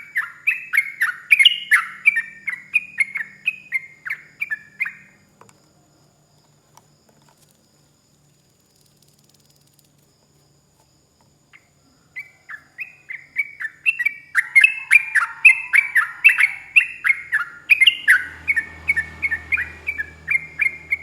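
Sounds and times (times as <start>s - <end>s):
bulbul singing: 0.0s - 5.2s, 11.5s - 21.0s.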